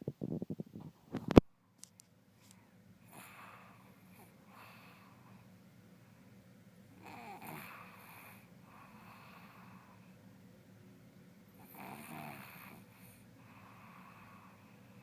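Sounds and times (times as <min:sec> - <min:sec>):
person snoring: 0:07.0 - 0:09.8, 0:11.6 - 0:12.8
soft breath out: 0:12.7 - 0:15.0.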